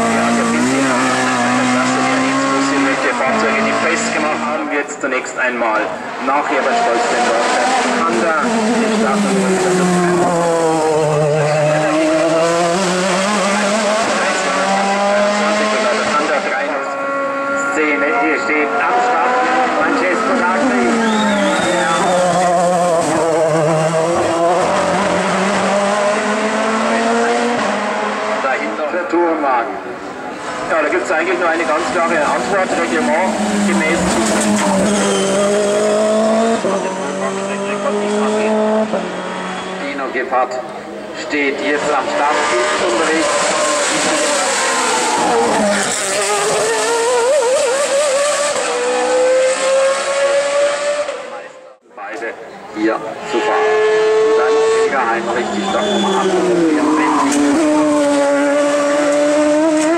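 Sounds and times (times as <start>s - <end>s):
race car engine at high revs: 0.0s - 59.9s
tyres squealing: 20.4s - 24.0s, 32.6s - 36.0s, 55.2s - 57.9s.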